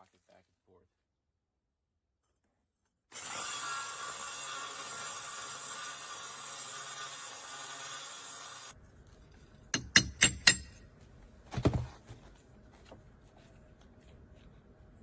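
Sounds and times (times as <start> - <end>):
power drill cutting into brick: 3.1 - 8.8
sharp knocks: 9.8 - 10.8.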